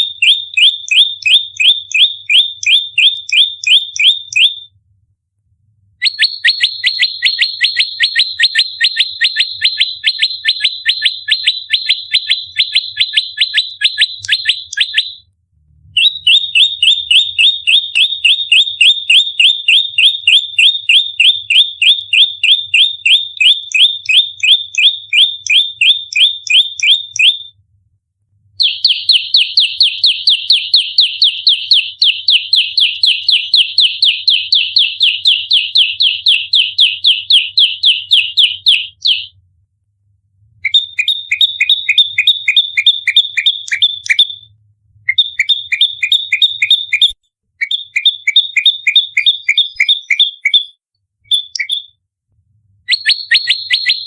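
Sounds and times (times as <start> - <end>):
bird rapid high call: 6.0 - 15.2, 40.7 - 44.4, 45.1 - 51.9, 52.9 - 54.0.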